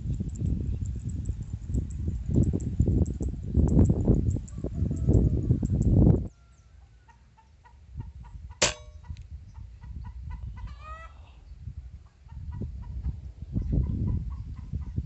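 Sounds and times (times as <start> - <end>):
sharp metallic clang: 8.6 - 9.1.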